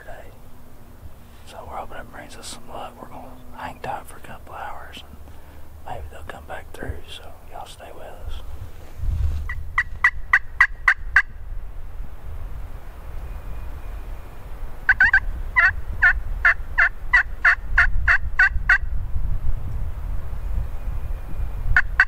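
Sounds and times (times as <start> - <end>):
wind rumble on microphone: 0.0 - 22.0
turkey yelps: 14.9 - 18.8.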